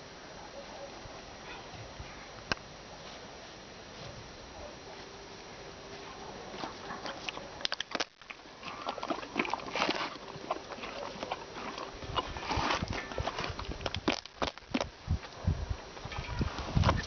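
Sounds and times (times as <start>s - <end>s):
horse clicking: 6.6s - 14.9s.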